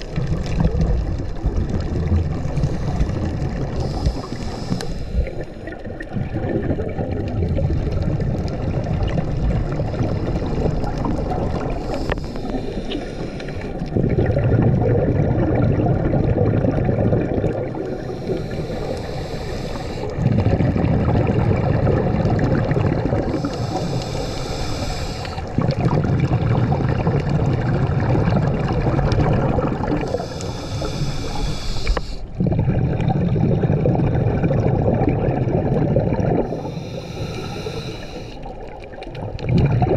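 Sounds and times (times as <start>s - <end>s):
bubbling rumble on exhale: 0.0s - 39.9s
regulator hiss on inhale: 2.5s - 5.8s, 11.5s - 13.9s, 17.8s - 20.2s, 23.2s - 25.6s, 29.9s - 32.4s, 36.4s - 38.7s.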